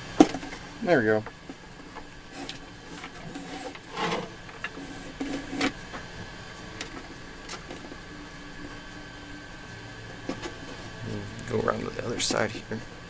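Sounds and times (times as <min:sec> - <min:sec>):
light clicks rubs and scrapes: 0:02.3 - 0:05.8
loud scrape: 0:02.3 - 0:05.8.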